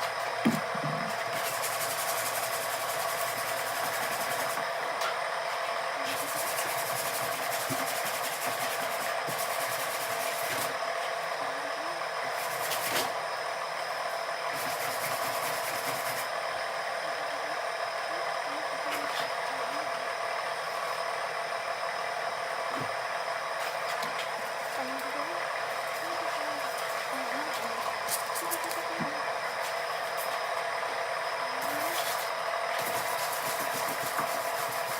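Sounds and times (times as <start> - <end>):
steady hum: 0.0 - 34.9
sandpaper rubbing on filler: 32.8 - 34.9.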